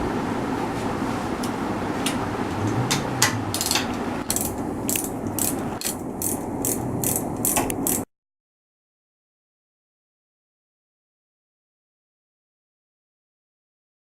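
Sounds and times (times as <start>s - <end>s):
workshop background noise: 0.0s - 8.1s
ratchet wrench pawl clicking: 3.5s - 8.0s.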